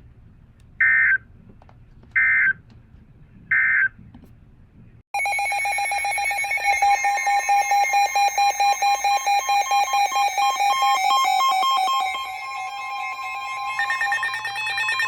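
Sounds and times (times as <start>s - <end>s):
higher alarm tone: 5.2s - 15.0s
pulsing electronic alarm tone: 5.2s - 15.0s.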